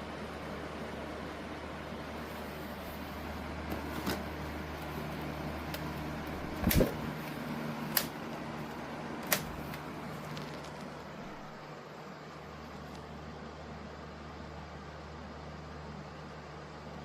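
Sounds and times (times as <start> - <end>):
table fan whirring: 0.0 - 17.0
sharp clicks: 9.2 - 9.8.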